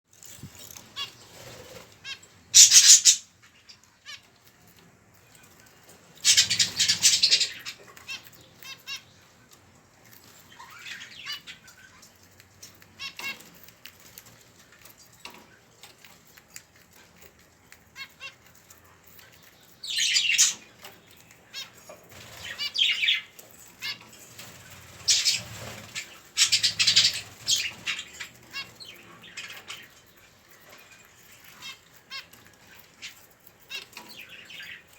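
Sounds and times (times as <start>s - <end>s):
chicks raspy fluttering noise: 0.1s - 3.2s, 19.9s - 29.8s.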